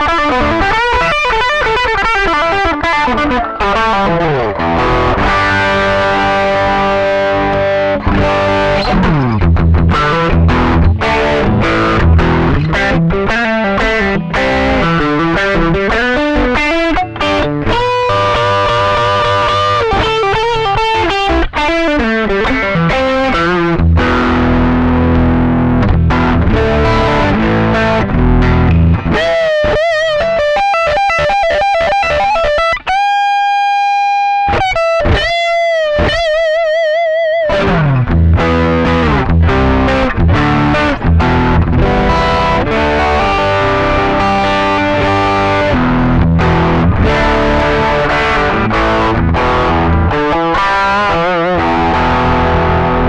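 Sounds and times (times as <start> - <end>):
overdriven electric guitar: 0.0 - 53.0.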